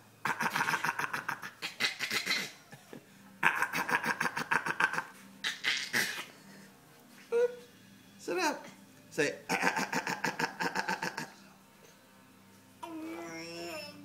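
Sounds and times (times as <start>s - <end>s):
dog coughing: 0.2s - 2.7s, 3.4s - 6.4s.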